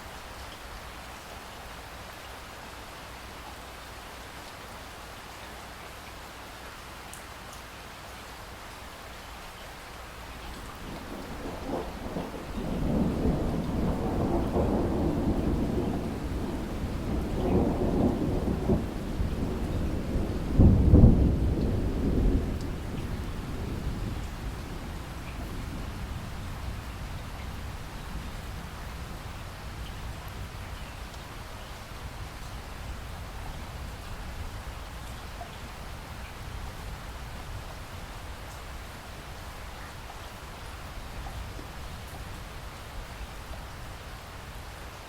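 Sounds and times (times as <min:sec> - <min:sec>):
steady rain falling: 0:00.0 - 0:45.0
thunder rumbling: 0:10.8 - 0:30.6.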